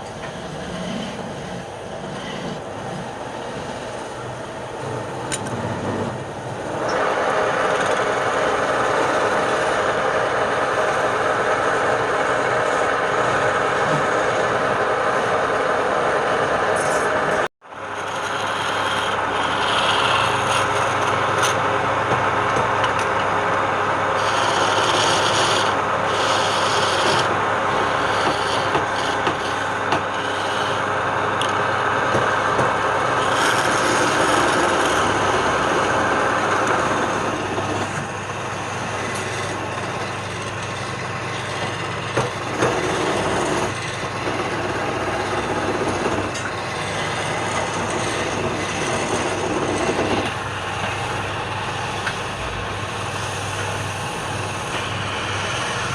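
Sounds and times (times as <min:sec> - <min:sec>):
wood rasping: 0:17.9 - 0:21.7, 0:24.1 - 0:31.0, 0:32.1 - 0:51.3.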